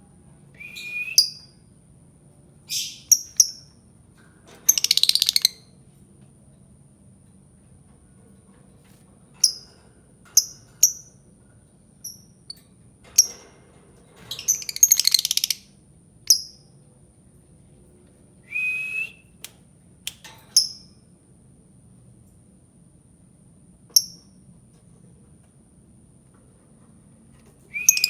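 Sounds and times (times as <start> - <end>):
short steady whistle: 0.6 - 1.4, 18.5 - 19.3, 27.7 - 28.0
lovebird chirping: 2.7 - 3.8, 4.7 - 5.6, 14.4 - 15.6, 27.7 - 28.0.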